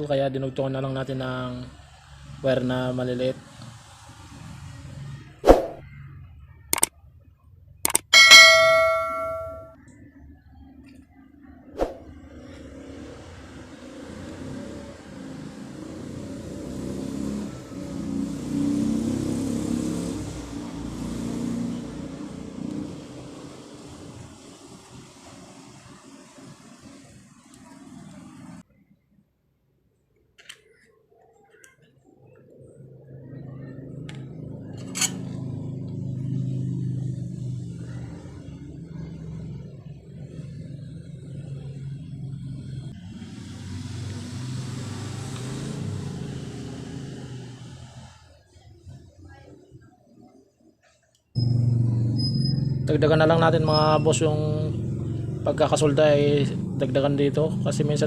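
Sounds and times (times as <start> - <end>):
sharp clicks: 6.7 - 6.9, 7.8 - 8.1
vehicle engine passing: 11.9 - 28.6, 32.5 - 48.6, 51.4 - 58.0.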